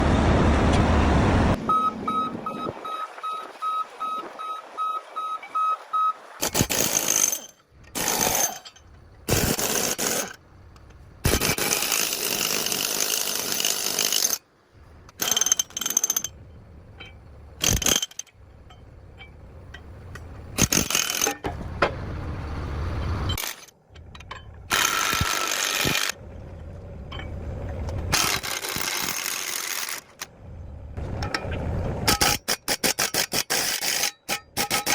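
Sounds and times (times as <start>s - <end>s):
alarm beeping: 1.6s - 6.2s.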